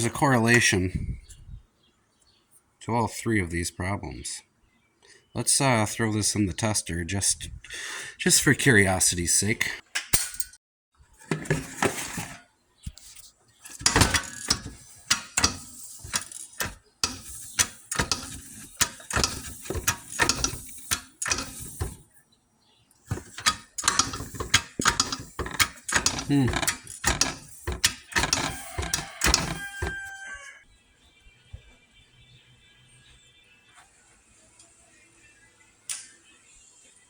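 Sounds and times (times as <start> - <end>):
metallic clicking and ratcheting: 13.6 - 22.0, 23.1 - 30.1.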